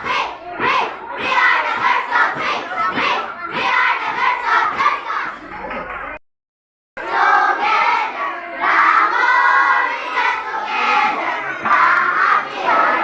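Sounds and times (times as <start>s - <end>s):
children singing and shouting: 0.0s - 5.7s, 7.0s - 13.0s.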